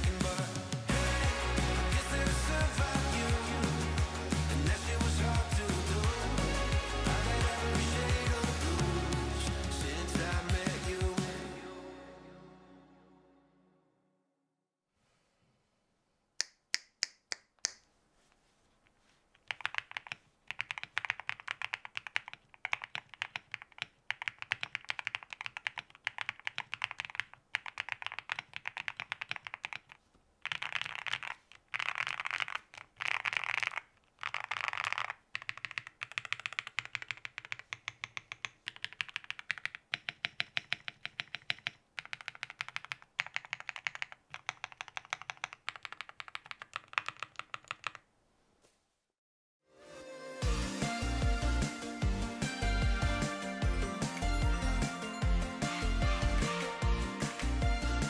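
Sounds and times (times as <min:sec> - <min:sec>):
mechanical keyboard typing: 0:19.4 - 0:48.0.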